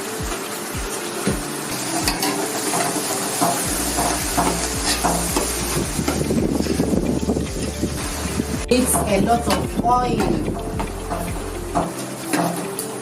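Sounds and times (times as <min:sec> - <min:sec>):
greens sizzling in hot oil: 0:00.0 - 0:13.0.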